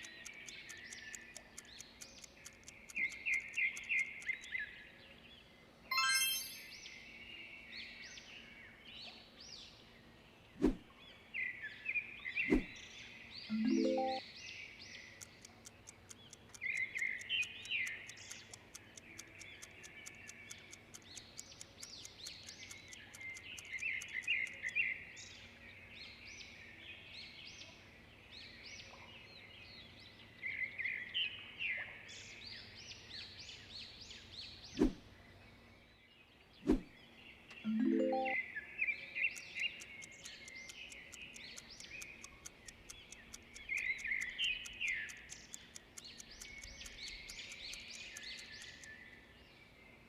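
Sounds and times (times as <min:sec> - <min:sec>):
fine high ticking: 0:00.0 - 0:04.6, 0:15.2 - 0:24.8, 0:39.2 - 0:49.0
sharp clicks: 0:00.0 - 0:04.6, 0:15.2 - 0:24.9, 0:39.2 - 0:49.0
birds chirping: 0:00.0 - 0:07.3, 0:09.5 - 0:26.5, 0:36.5 - 0:50.0.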